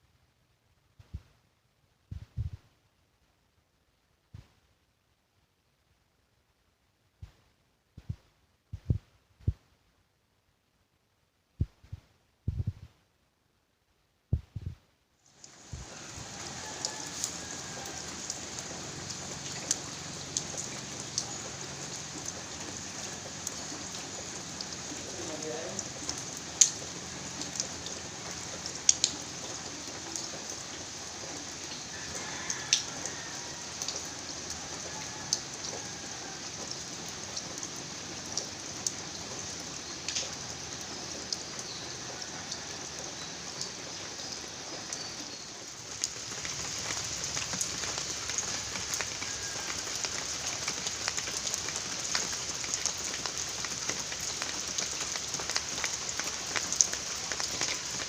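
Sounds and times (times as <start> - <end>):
steady rain falling: 15.2 - 58.0.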